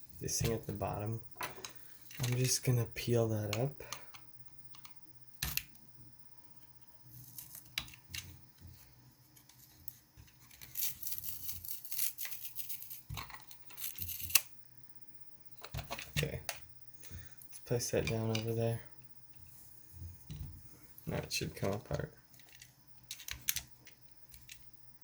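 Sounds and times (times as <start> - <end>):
plastic clicks: 21.2 - 24.7.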